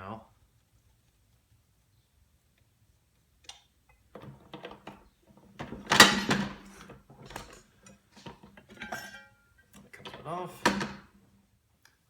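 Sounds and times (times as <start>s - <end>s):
metal belt guard clanking and rattling: 5.6s - 9.5s.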